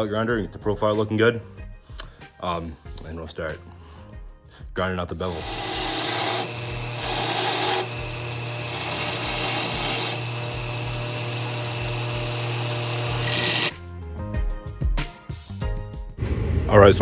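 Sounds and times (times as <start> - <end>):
steel grinding hiss: 5.3 - 13.7
belt grinder motor hum: 5.3 - 13.8.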